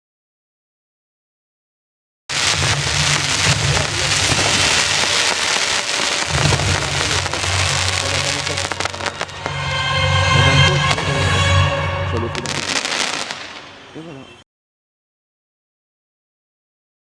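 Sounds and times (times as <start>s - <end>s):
fireworks crackling: 2.3s - 14.4s
low rumble of booms: 2.4s - 9.6s.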